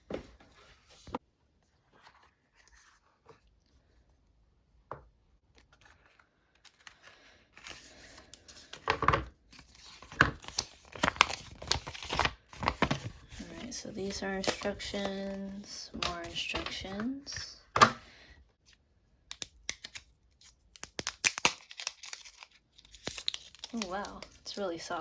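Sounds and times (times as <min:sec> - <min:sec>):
paper and cardboard rustling: 0:00.0 - 0:03.6, 0:05.6 - 0:18.0, 0:19.9 - 0:25.0.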